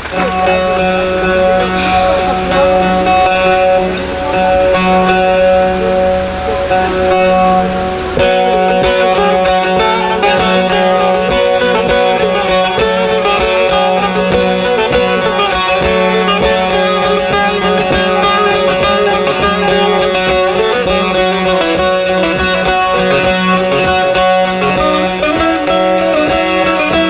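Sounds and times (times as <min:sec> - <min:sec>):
low drone: 0:00.0 - 0:27.0
plucked string instrument: 0:00.0 - 0:27.0.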